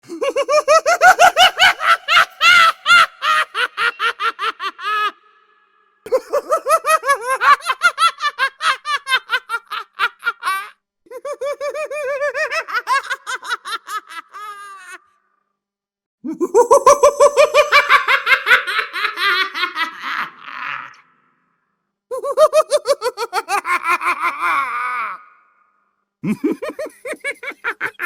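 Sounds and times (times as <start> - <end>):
high-pitched cackling laugh: 0.0 - 5.4, 6.1 - 15.2, 16.3 - 21.2, 22.1 - 25.4, 26.2 - 28.0.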